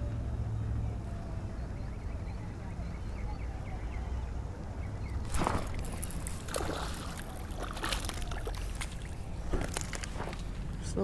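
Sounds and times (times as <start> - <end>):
water splashing and sloshing: 5.0 - 11.0.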